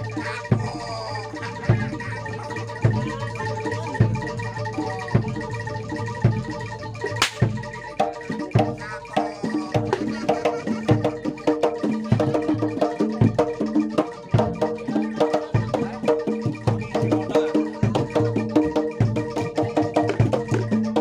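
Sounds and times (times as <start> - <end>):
sharp crack: 7.2 - 7.4.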